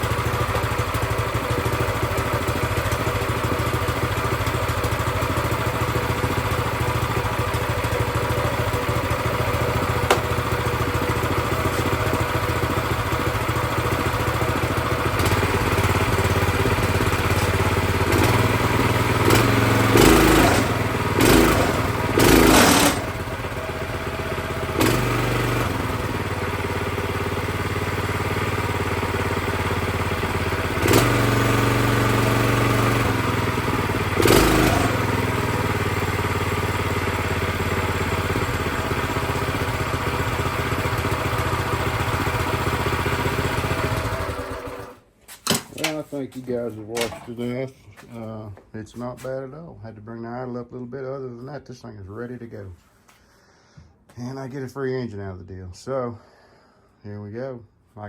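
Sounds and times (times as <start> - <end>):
small engine running at raised idle: 0.0 - 45.0.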